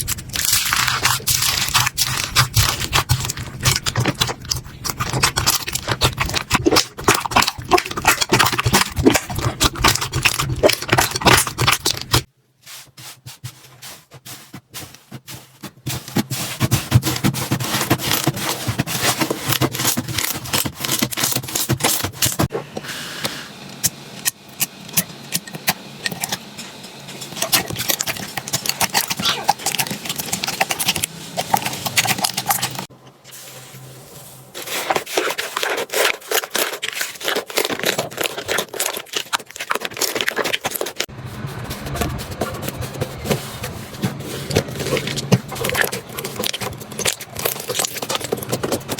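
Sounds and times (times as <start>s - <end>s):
slime crackling and popping: 0.0s - 12.3s, 27.4s - 32.9s.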